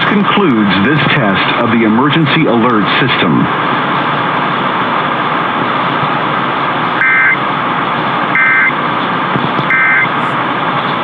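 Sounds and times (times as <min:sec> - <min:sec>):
digital code buzzing bursts: 0:07.0 - 0:07.4, 0:08.4 - 0:08.7, 0:09.7 - 0:10.4
radio hiss: 0:07.0 - 0:07.4, 0:08.4 - 0:11.0.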